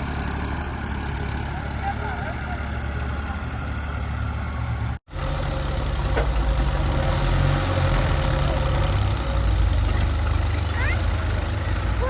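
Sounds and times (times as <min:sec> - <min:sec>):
heavy diesel engine running: 0:00.0 - 0:12.0.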